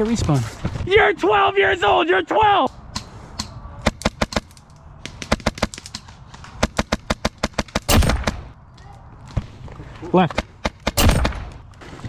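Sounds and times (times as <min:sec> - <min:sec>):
airsoft guns firing: 0:03.8 - 0:08.6, 0:10.4 - 0:11.7.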